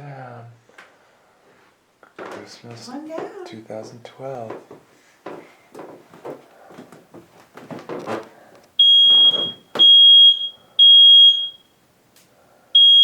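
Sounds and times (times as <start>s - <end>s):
smoke alarm beeping: 8.8s - 11.9s, 12.7s - 13.0s.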